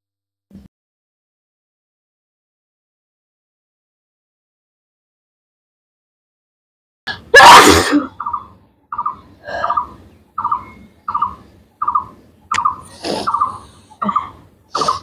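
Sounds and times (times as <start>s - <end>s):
person sneezing: 7.4s - 8.2s.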